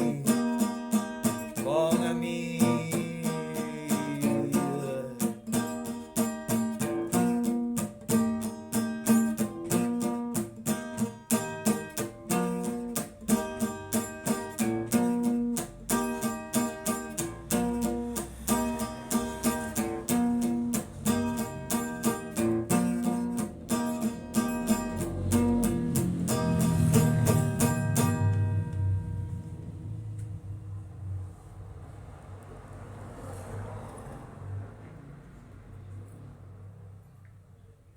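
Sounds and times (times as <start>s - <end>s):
rapidly picked acoustic guitar: 0.0s - 30.2s.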